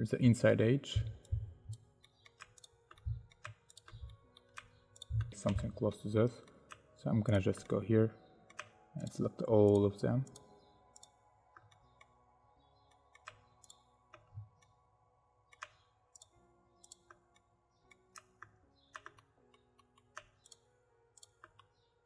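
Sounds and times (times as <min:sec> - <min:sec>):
quiet background music: 0:00.0 - 0:22.0
computer mouse clicking: 0:01.0 - 0:05.7, 0:11.0 - 0:11.8, 0:12.9 - 0:14.7, 0:15.5 - 0:20.6, 0:21.2 - 0:21.7.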